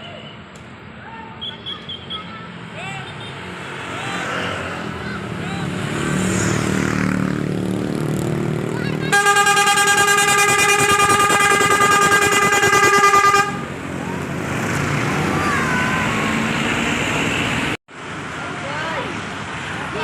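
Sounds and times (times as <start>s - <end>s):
bus engine running: 6.7s - 18.6s
bus horn held note: 9.1s - 13.7s.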